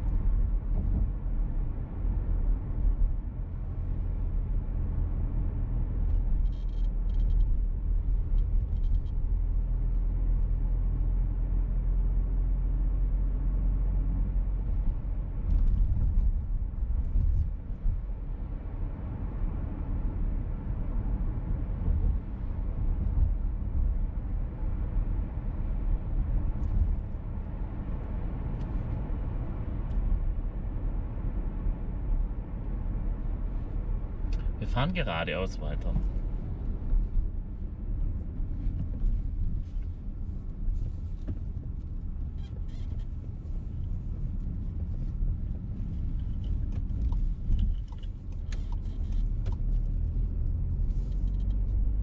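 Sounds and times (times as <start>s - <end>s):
car engine and road noise: 0.0s - 52.0s.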